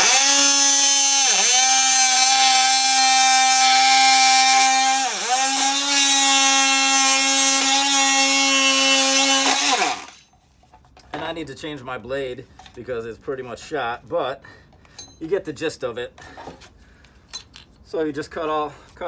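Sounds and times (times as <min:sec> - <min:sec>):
multi-tool cutting laminate flooring: 0:00.0 - 0:10.2.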